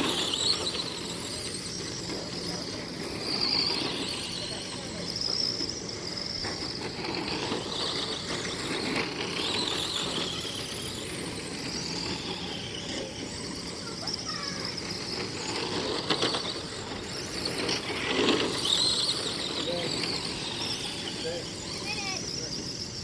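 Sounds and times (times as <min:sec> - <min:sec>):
radio-controlled car motors whining: 0:00.0 - 0:23.0
tyre squeal: 0:00.0 - 0:23.0.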